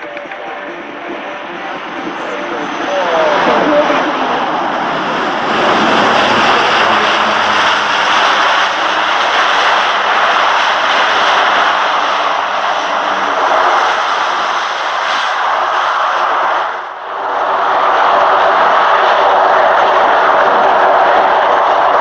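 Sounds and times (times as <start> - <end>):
military aircraft engines: 0.0 - 22.0.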